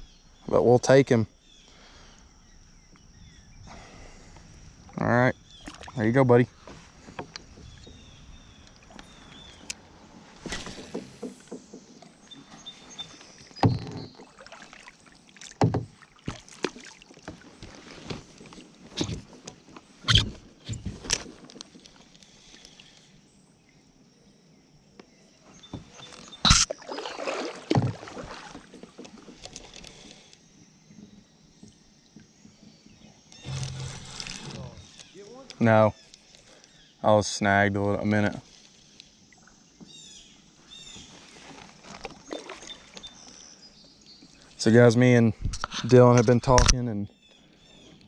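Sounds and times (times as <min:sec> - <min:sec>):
water movement: 0:03.6 - 0:23.9, 0:25.5 - 0:30.4, 0:31.0 - 0:36.6, 0:40.5 - 0:46.8
knocks on kayak hull: 0:10.5 - 0:12.1, 0:15.6 - 0:16.8.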